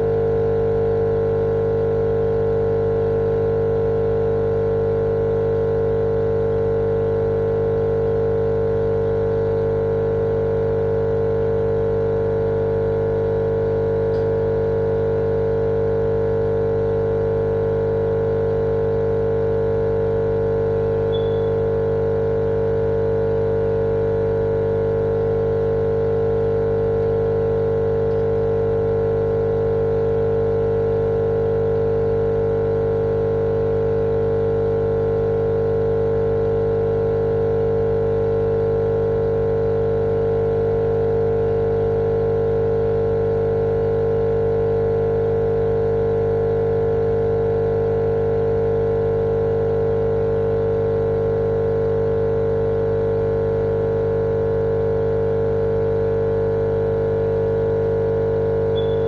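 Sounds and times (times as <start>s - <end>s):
machine motor droning hum: 58.5s - 59.0s.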